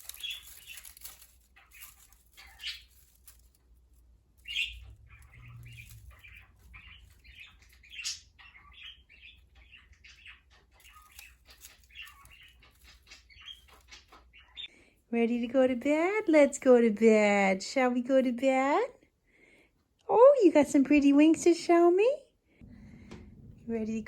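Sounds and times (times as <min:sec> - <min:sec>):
budgerigars chirping: 0:00.0 - 0:03.4, 0:04.4 - 0:14.8
wing flapping: 0:00.0 - 0:03.6.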